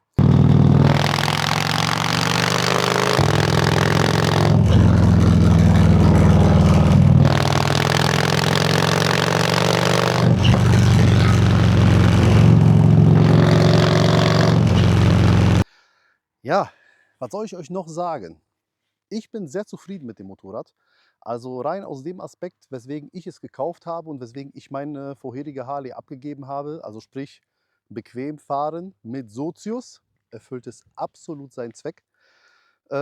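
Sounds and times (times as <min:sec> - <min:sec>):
motorcycle engine accelerating: 0:00.0 - 0:15.6.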